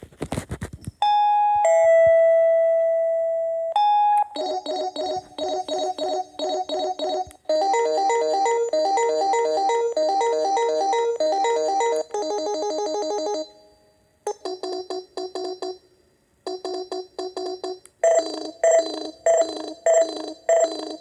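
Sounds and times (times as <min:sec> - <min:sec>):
electronic phone ringtones: 0:03.8 - 0:15.8, 0:16.5 - 0:21.0.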